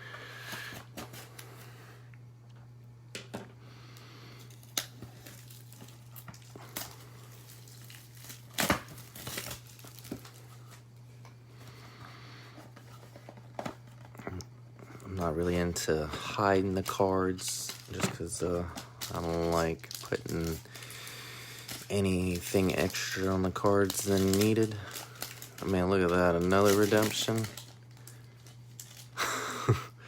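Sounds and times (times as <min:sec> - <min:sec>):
low electrical hum: 0:00.0 - 0:30.0
wrapper crinkling and tearing: 0:04.5 - 0:10.8, 0:15.2 - 0:29.3.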